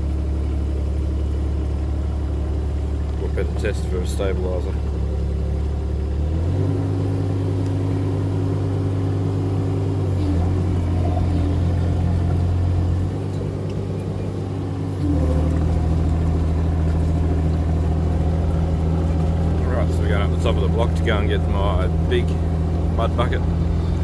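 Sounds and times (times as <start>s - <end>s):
excavator diesel engine running: 0.0s - 24.0s.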